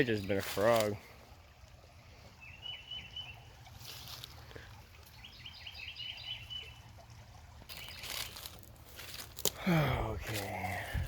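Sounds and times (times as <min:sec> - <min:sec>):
leaves rustling: 0:00.0 - 0:01.2, 0:03.6 - 0:05.3, 0:07.5 - 0:11.0
bird chirping: 0:02.4 - 0:03.5, 0:05.1 - 0:06.9.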